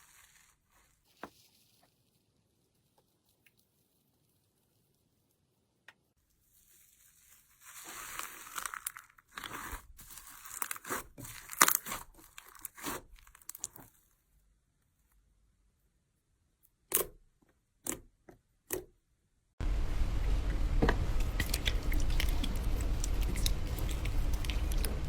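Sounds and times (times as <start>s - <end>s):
slime squeezed and stretched: 6.7s - 14.0s, 21.1s - 25.0s.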